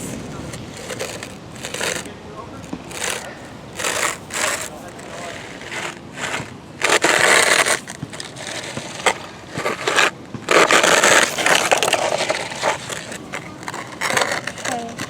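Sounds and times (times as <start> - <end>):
toy truck scraping through sand: 0.0 - 15.0.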